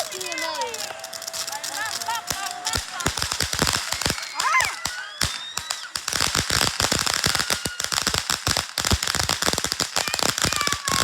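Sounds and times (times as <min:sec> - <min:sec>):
faint firework whistles: 0:00.0 - 0:08.4
fireworks crackling: 0:00.0 - 0:11.0.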